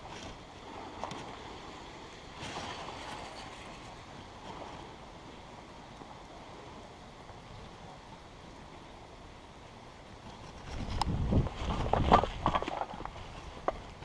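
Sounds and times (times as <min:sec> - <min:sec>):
wind on microphone: 0:10.2 - 0:14.0.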